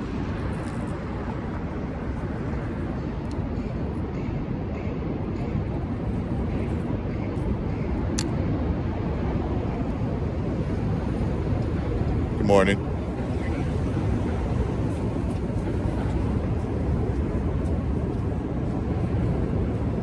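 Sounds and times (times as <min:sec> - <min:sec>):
low outdoor rumble: 0:05.2 - 0:20.0.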